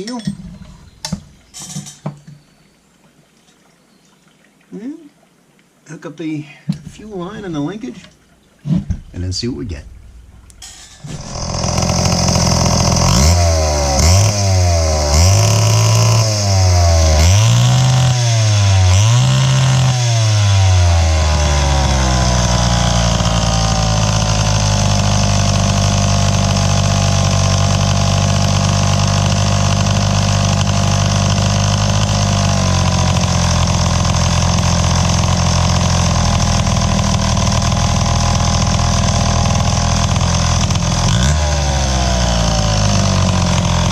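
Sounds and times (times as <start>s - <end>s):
chainsaw engine revving and idling: 11.1s - 43.9s.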